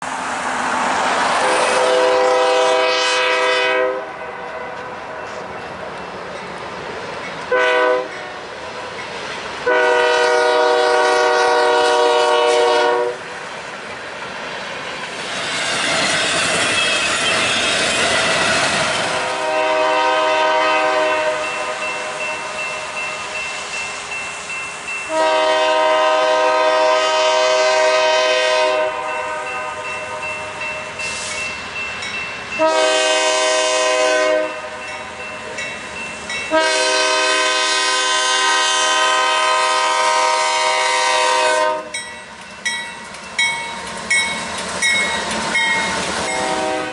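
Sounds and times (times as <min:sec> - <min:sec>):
train wheels rumbling on rails: 0:00.0 - 0:46.9
locomotive air horn blasts: 0:01.4 - 0:04.8, 0:07.5 - 0:08.3, 0:09.6 - 0:13.3, 0:19.1 - 0:22.6, 0:25.1 - 0:30.3, 0:32.6 - 0:34.7, 0:36.5 - 0:42.0, 0:46.2 - 0:46.9.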